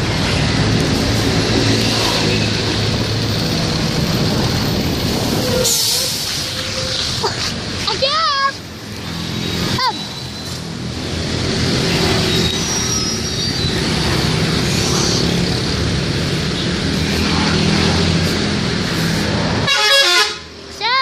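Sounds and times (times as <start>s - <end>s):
bus engine running: 0.0s - 20.9s
traffic road noise: 0.0s - 21.0s
warbling multi-tone bus horn: 19.6s - 20.5s.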